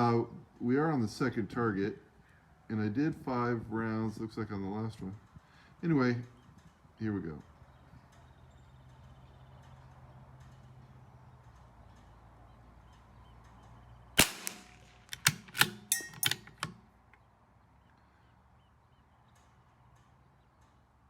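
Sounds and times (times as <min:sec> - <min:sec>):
rifle shot: 0:14.2 - 0:16.8
rifle bolt metallic clacks: 0:14.2 - 0:17.2.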